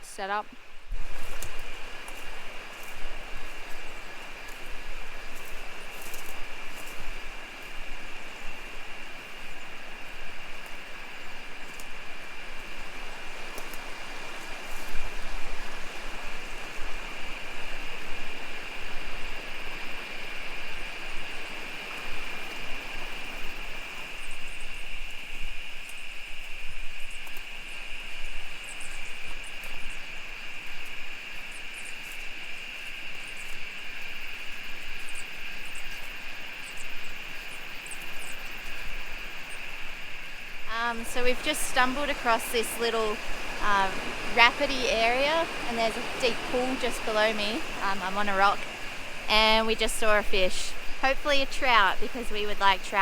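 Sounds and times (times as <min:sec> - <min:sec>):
faint crackles: 0:35.0 - 0:53.0
river rapids rushing: 0:40.7 - 0:53.0.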